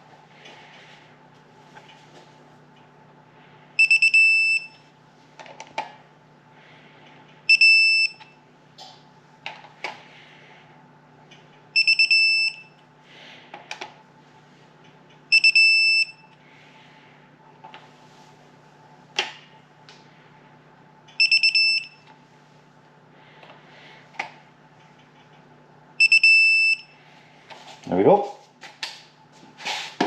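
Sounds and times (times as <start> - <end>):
torque wrench beeping: 11.8 - 12.6, 15.3 - 16.2, 21.2 - 22.0, 26.0 - 26.9.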